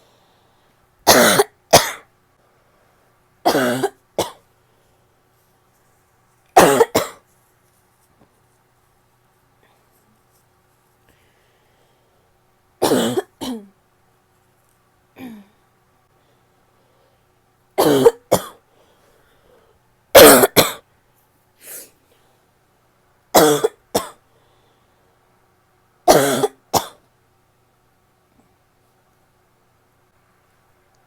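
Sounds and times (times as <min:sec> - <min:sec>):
woman's barking cough: 0:01.1 - 0:02.0, 0:03.5 - 0:04.4, 0:06.6 - 0:07.2, 0:12.8 - 0:13.7, 0:17.8 - 0:18.6, 0:20.2 - 0:20.8, 0:23.4 - 0:24.2, 0:26.1 - 0:27.0.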